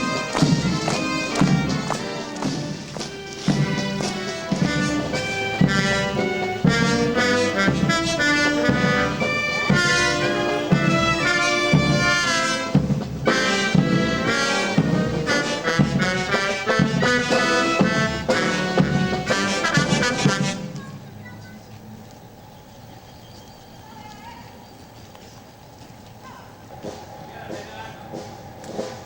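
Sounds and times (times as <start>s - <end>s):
low drum beat: 0.0s - 20.4s, 26.5s - 29.0s
military brass band march: 0.0s - 20.8s, 26.8s - 29.0s.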